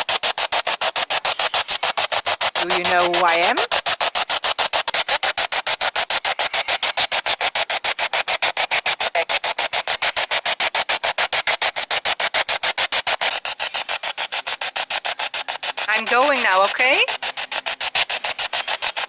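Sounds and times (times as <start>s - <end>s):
pulsing radio static: 1.2s - 3.8s, 4.6s - 8.2s, 8.8s - 19.0s.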